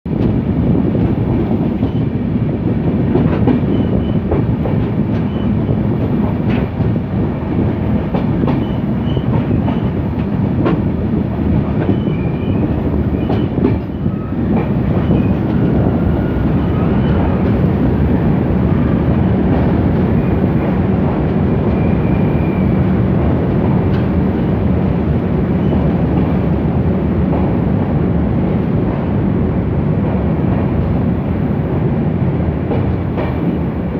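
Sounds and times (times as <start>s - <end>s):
train rumble: 0.1s - 33.9s.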